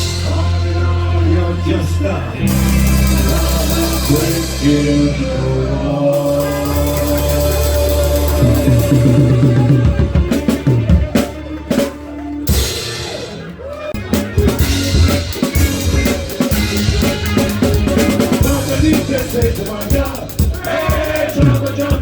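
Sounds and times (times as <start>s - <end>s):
drum kit hits: 0.0s - 0.9s, 2.4s - 5.2s, 14.0s - 22.0s
soul band playing: 0.0s - 22.0s.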